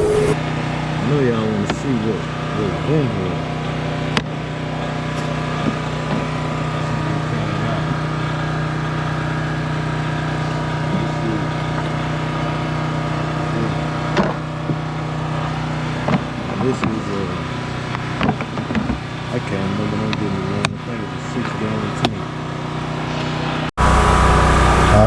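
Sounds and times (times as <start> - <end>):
machine motor humming: 0.0 - 0.4, 23.8 - 25.0.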